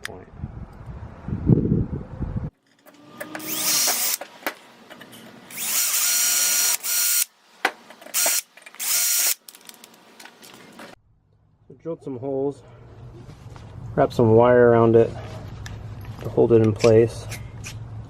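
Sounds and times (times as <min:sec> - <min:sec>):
power drill whining: 0:02.7 - 0:04.2, 0:05.5 - 0:07.3, 0:08.1 - 0:09.4.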